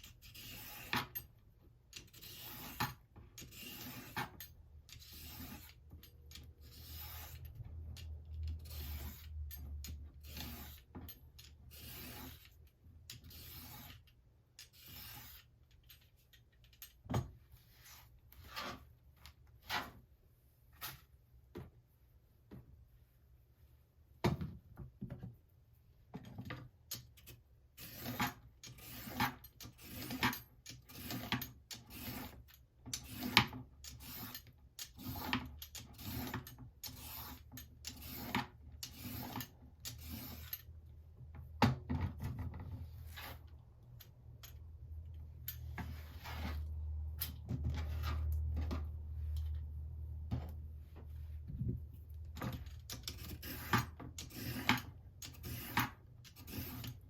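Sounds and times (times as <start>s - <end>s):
peeler scraping a carrot: 0.0s - 1.2s, 2.0s - 15.6s, 27.7s - 40.7s, 45.6s - 46.8s, 52.9s - 57.0s.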